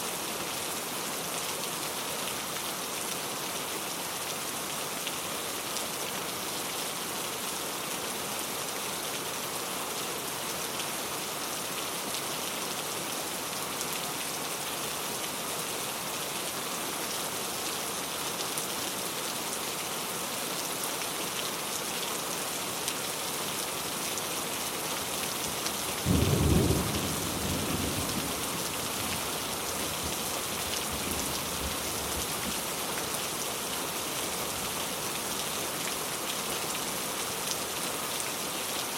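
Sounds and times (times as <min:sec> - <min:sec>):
heavy rain falling: 0:00.1 - 0:38.9.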